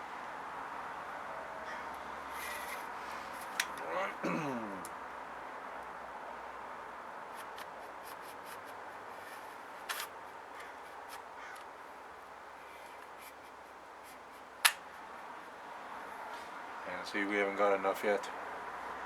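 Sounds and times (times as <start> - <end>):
recoil starter rope clicking and rubbing: 2.4 - 3.9, 7.3 - 11.7, 12.6 - 15.6.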